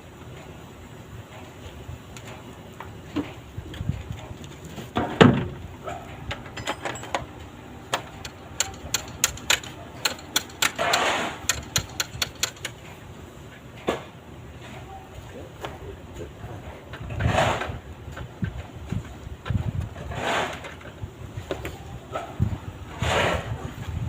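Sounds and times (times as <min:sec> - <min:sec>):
metal tools clicking and tapping: 0:06.1 - 0:13.0
heavy metal knock: 0:07.9 - 0:12.8
metal scrape: 0:08.0 - 0:12.8, 0:20.0 - 0:20.9.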